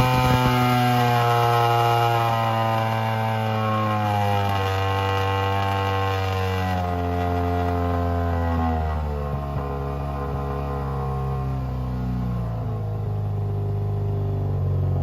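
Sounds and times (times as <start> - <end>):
motorcycle engine exhaust note: 0.0 - 15.0.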